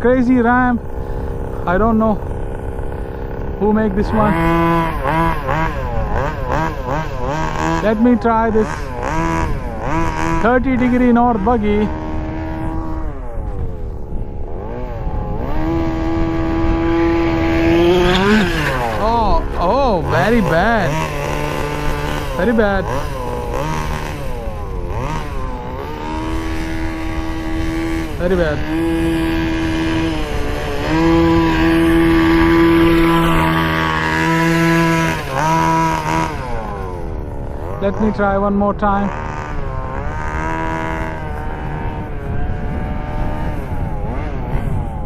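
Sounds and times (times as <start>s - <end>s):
small two-stroke engine revving: 0.0s - 45.0s.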